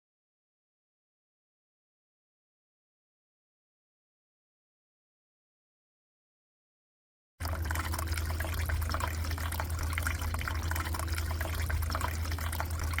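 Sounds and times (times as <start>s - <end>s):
low hum: 7.4s - 13.0s
water trickling in a tabletop fountain: 7.4s - 13.0s.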